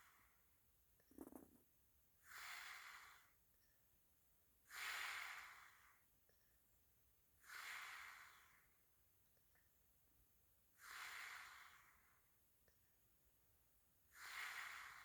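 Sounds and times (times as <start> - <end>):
woman breathing heavily in sleep: 2.2 - 3.4, 4.7 - 6.1, 7.4 - 8.8, 10.8 - 12.3, 14.1 - 15.0.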